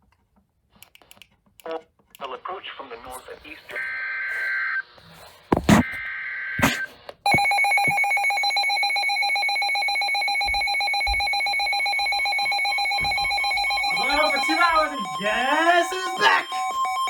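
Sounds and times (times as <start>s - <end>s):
rapidly pulsing alarm beep: 6.6s - 17.0s.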